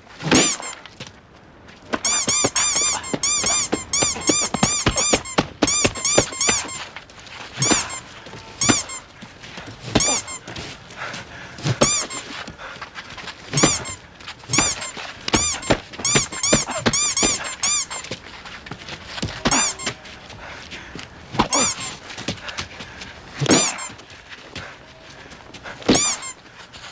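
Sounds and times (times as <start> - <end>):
high-pitched squeaky toy squeaks: 0.2 - 0.8, 1.9 - 7.0, 7.6 - 9.1, 9.8 - 10.5, 11.6 - 12.4, 13.5 - 18.2, 19.2 - 20.1, 21.4 - 22.0, 23.4 - 24.0, 25.8 - 26.4.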